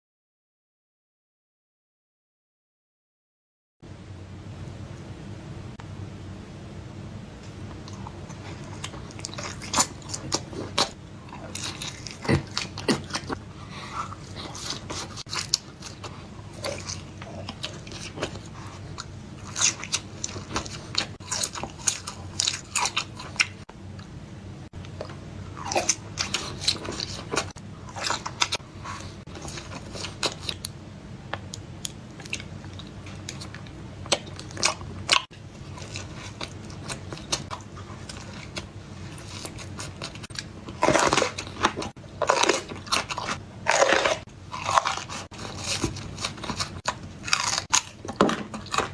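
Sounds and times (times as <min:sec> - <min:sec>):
crunchy bites and chewing: 0:07.7 - 0:23.7, 0:24.8 - 0:30.7, 0:31.9 - 0:48.9.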